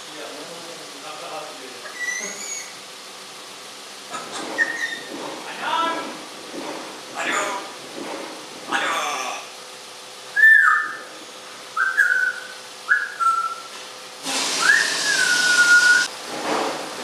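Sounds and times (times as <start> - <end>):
parrot whistling: 1.9 - 2.8, 4.6 - 5.1, 10.3 - 11.2, 11.8 - 13.7, 14.6 - 16.1
hiss: 14.2 - 17.0.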